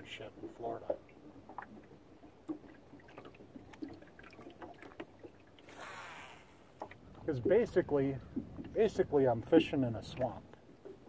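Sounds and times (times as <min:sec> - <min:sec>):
water lapping against boat hull: 0:00.0 - 0:11.0
faint ticks and knocks: 0:00.4 - 0:05.6.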